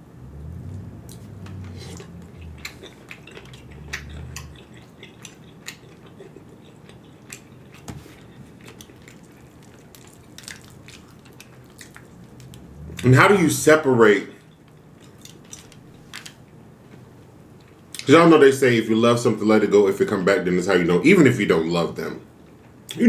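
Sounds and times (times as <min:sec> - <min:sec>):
low rumble: 0:00.0 - 0:04.8, 0:10.7 - 0:13.7
chewing with mouth clicks: 0:00.3 - 0:13.2, 0:14.5 - 0:18.1.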